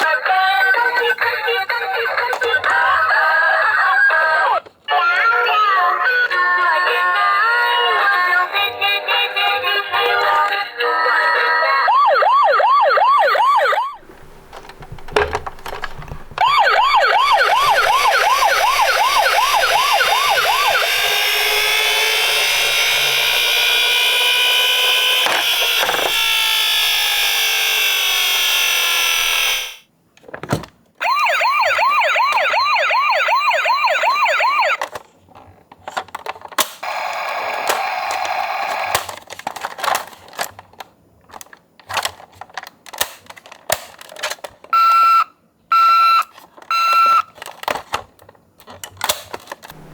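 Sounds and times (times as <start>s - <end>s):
toy ambulance siren: 0.4s - 14.0s, 15.6s - 29.8s, 31.0s - 35.0s, 36.8s - 39.2s, 44.8s - 47.4s
small clicks and knocks: 14.0s - 16.6s.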